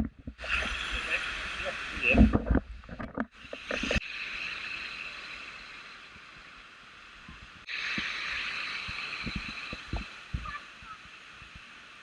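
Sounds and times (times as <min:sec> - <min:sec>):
waterfall rushing: 0:00.4 - 0:02.4, 0:03.6 - 0:12.0.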